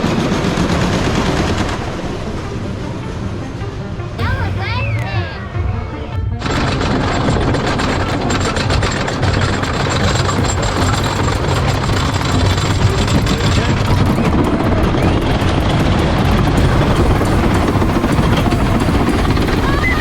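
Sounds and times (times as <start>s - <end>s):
loud low rumbling: 4.2s - 20.0s.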